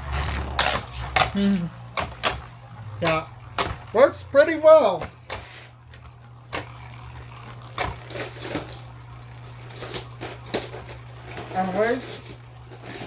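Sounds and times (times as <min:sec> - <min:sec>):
spinning top clicks and clatters: 0:05.3 - 0:13.0.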